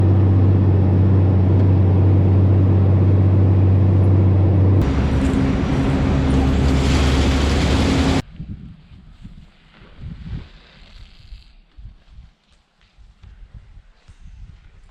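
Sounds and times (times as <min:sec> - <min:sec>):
deeper engine running: 0:00.0 - 0:08.2
tractor engine running: 0:00.0 - 0:08.2.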